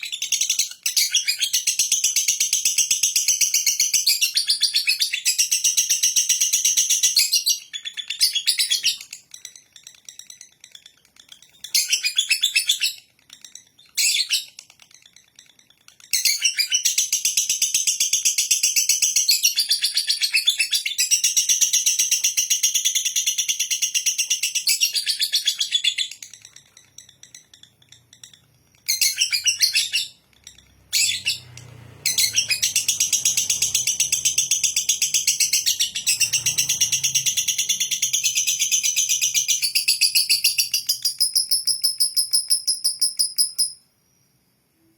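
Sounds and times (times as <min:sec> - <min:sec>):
bird chattering trill: 0:18.7 - 0:43.8.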